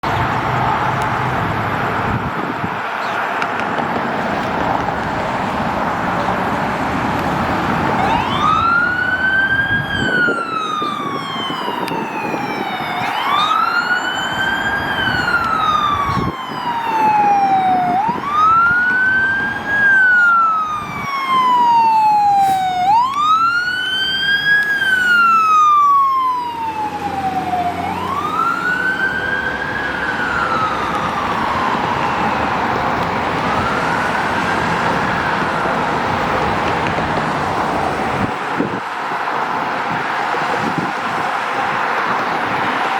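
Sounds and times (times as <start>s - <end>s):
fire truck siren wailing: 0.0s - 42.9s
road noise: 0.0s - 42.9s.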